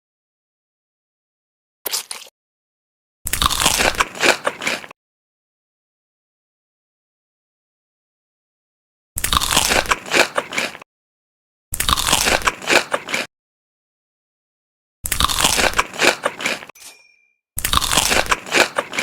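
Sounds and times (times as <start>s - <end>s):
crunching and chewing chicken: 1.9s - 2.3s, 3.3s - 5.0s, 9.2s - 10.8s, 11.7s - 13.3s, 15.0s - 16.8s, 17.6s - 19.0s.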